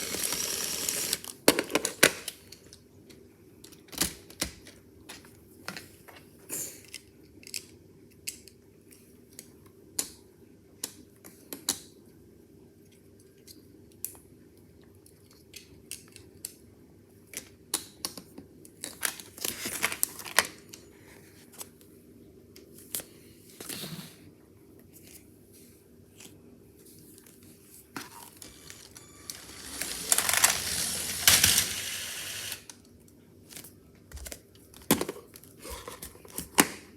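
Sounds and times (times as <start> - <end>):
plastic bricks clattering: 28.4 - 32.6.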